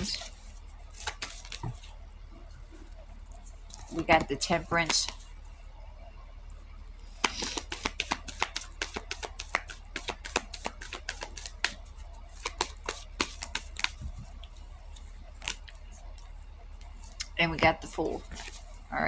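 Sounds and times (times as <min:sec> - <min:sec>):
cards being shuffled: 0:01.0 - 0:01.9, 0:07.1 - 0:14.2, 0:15.4 - 0:15.7, 0:18.2 - 0:18.6.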